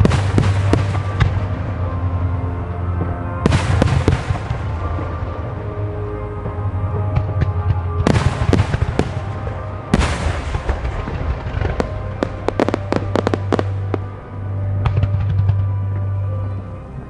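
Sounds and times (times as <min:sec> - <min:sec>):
music playing: 0:00.0 - 0:17.0
firework cracks: 0:08.1 - 0:14.0.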